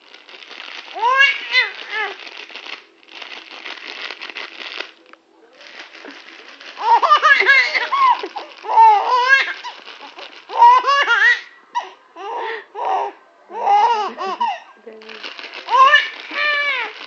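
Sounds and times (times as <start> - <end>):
baby girl laughing: 0.9 - 2.2, 6.0 - 14.7, 15.7 - 17.0.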